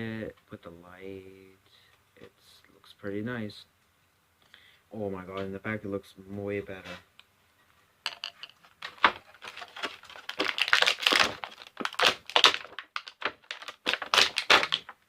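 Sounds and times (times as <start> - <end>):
plastic packaging crinkling: 8.1 - 15.0.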